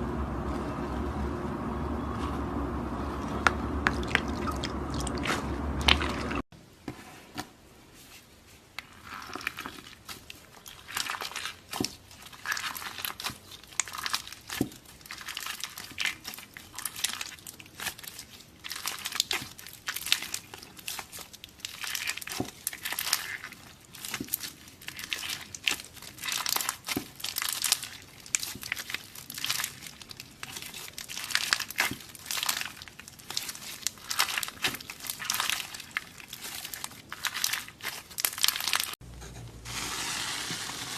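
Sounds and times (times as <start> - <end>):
slime crackling when squeezed: 9.1 - 39.0.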